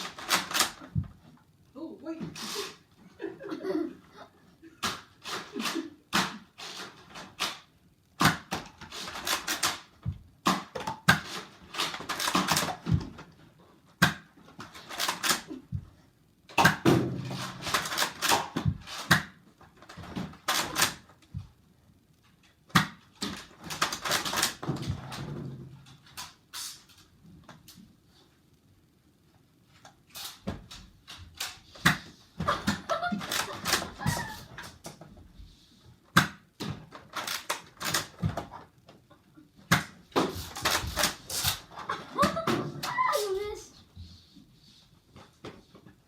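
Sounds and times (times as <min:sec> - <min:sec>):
toy blaster clicks and knocks: 0:00.0 - 0:01.0, 0:04.8 - 0:13.2, 0:14.0 - 0:15.5, 0:16.5 - 0:21.1, 0:22.8 - 0:25.0, 0:31.4 - 0:35.0, 0:36.2 - 0:38.6, 0:39.7 - 0:41.7.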